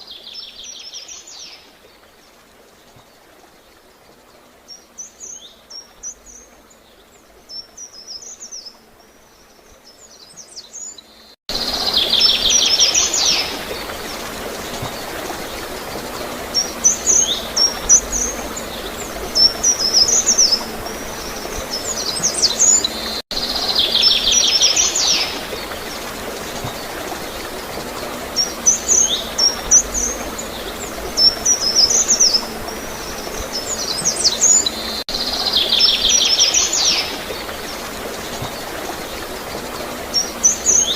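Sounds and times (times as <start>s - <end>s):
songbirds chirping: 0.0s - 40.9s
water gurgling: 11.5s - 40.9s.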